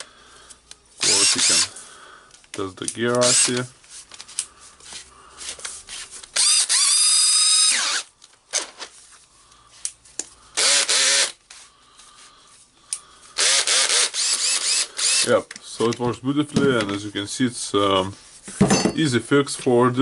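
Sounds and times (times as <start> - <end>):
cordless drill motor whining: 1.0 - 1.8, 6.4 - 8.1, 10.6 - 11.4, 13.4 - 15.4.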